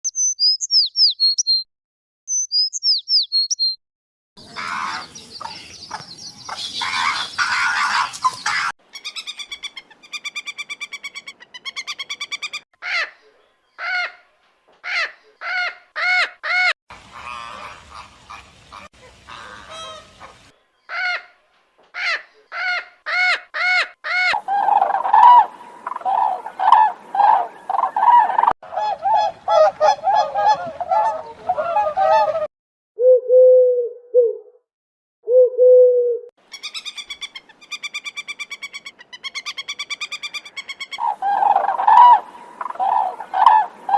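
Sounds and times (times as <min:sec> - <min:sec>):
high bird chirps: 0:00.0 - 0:01.7, 0:02.3 - 0:03.8, 0:04.8 - 0:12.6, 0:24.3 - 0:28.6, 0:36.5 - 0:43.9
loud repeated bird calls: 0:00.1 - 0:01.6, 0:02.3 - 0:03.8, 0:04.4 - 0:32.5, 0:36.5 - 0:43.9
harsh bird squawks: 0:04.4 - 0:14.2, 0:14.8 - 0:20.3, 0:22.0 - 0:32.4, 0:36.5 - 0:43.9
goose-like honking: 0:16.9 - 0:20.5.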